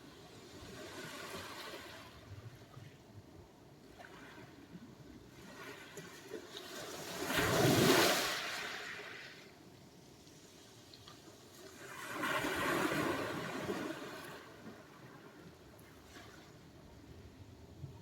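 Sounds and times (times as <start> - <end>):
sea waves washing on shore: 6.8 - 9.5.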